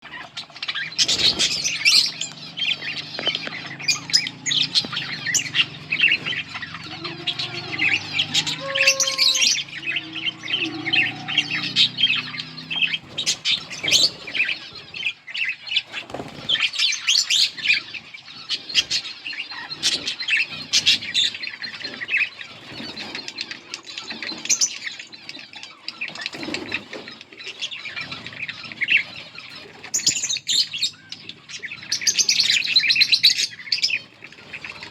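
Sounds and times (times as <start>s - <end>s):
budgerigars chirping and chattering: 0.0s - 34.9s.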